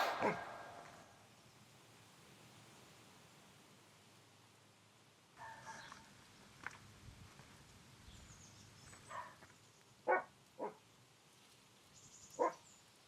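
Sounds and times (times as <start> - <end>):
short animal calls: 0.0 - 1.0.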